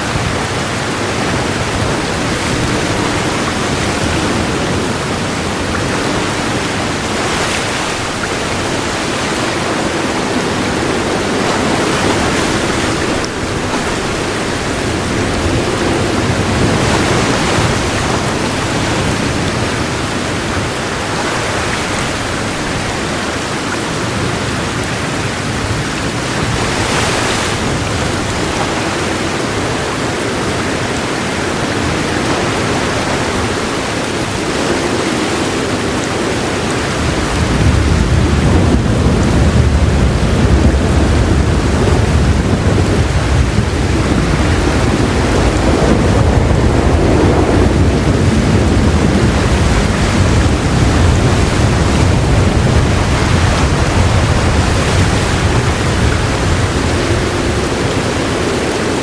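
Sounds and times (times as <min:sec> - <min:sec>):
heavy rain falling: 0:00.0 - 0:59.0
low rumble of thunder: 0:36.8 - 0:59.0.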